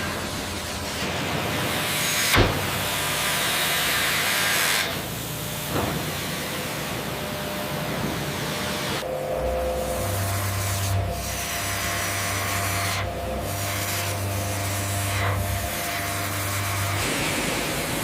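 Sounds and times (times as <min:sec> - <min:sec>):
sawmill machinery rushing hiss: 0:14.6 - 0:18.0.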